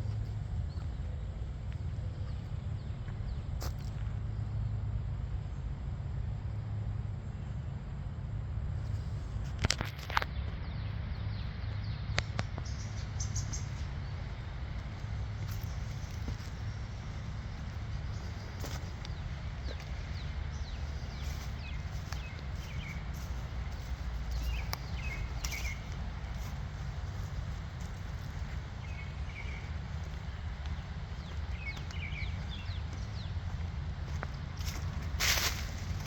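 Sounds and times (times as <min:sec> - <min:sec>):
bird chirps: 0:10.3 - 0:14.4, 0:17.9 - 0:34.8
light clicks or footsteps: 0:21.2 - 0:36.0.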